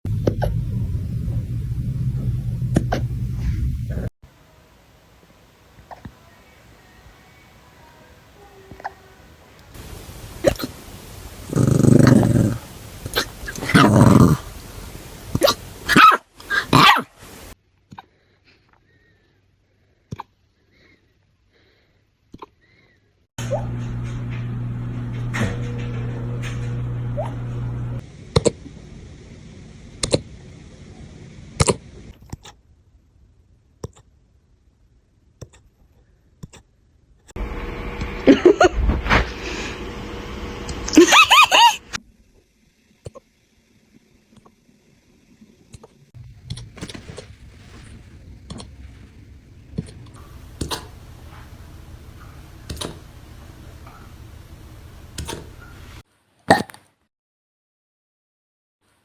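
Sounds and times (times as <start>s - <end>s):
steady low hum: 0.1s - 15.9s, 23.4s - 32.1s, 37.4s - 56.0s
puppy hiccuping: 15.4s - 17.1s.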